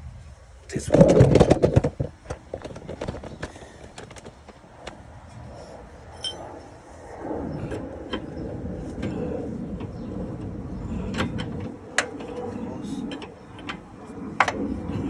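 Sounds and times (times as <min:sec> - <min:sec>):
rough scraping: 0:00.7 - 0:04.6
metal tools clinking: 0:06.2 - 0:06.4.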